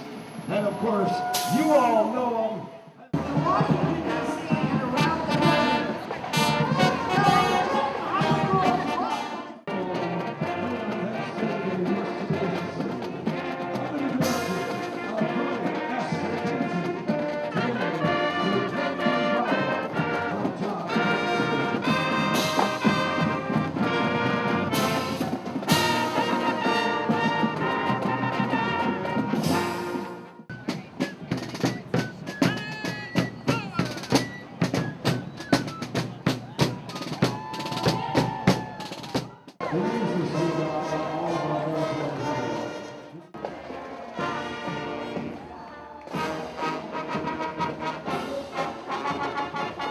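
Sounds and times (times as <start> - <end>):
marching band drums: 0.0 - 2.4, 3.1 - 39.8, 43.3 - 49.9
brass: 0.0 - 37.2, 37.8 - 49.9.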